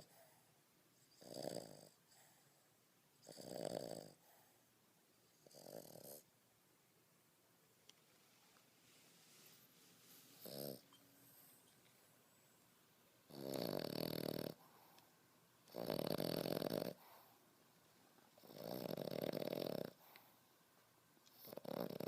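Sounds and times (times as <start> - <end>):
puppy snoring: 0.0 - 2.6, 3.2 - 4.6, 5.3 - 6.3, 10.1 - 11.6, 13.3 - 17.4, 18.4 - 20.3, 21.3 - 22.0.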